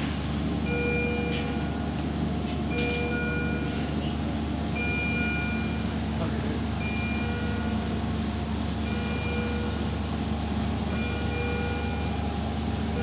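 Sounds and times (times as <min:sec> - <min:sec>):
low machine hum: 0:00.0 - 0:13.0
electronic alarm chime: 0:00.7 - 0:01.8, 0:02.7 - 0:03.9, 0:04.8 - 0:05.9, 0:06.8 - 0:07.8, 0:08.8 - 0:09.8, 0:11.0 - 0:12.2.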